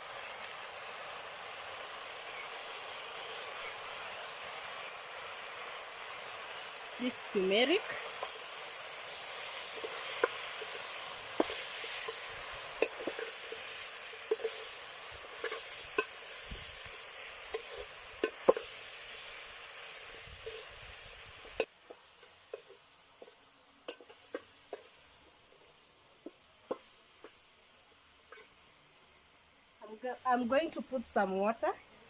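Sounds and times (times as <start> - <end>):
vegetables sizzling in a pot: 0.0 - 32.0
utensil clicking against a pot: 9.7 - 14.7, 15.4 - 16.3, 17.5 - 18.7.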